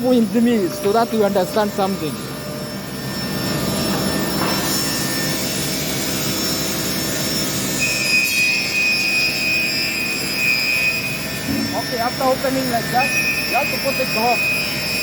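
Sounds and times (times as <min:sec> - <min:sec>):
high steady whine: 0:08.8 - 0:15.0
bandsaw running: 0:11.4 - 0:14.4.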